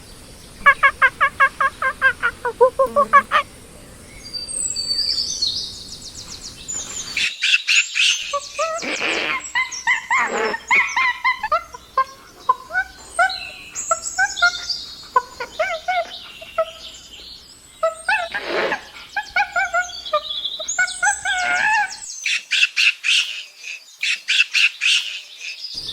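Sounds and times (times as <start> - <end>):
chimpanzee hoots: 0.7 - 3.5, 8.3 - 17.0
chimpanzee shrieks: 8.3 - 16.8, 20.7 - 22.1.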